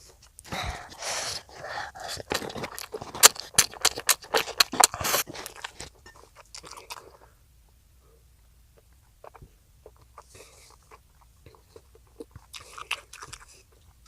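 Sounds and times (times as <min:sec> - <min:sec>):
chewing with crackles: 0:00.0 - 0:07.4, 0:08.6 - 0:14.0.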